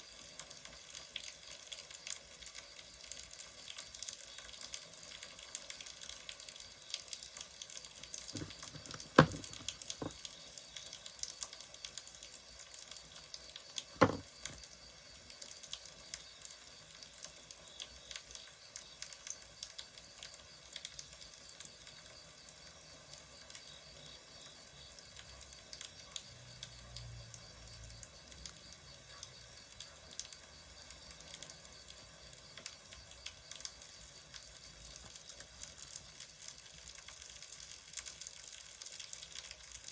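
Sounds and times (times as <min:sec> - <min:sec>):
wood fire crackling: 0:00.0 - 0:26.6, 0:28.0 - 0:39.9
loud sharp knocks: 0:08.4 - 0:10.1, 0:14.0 - 0:14.6.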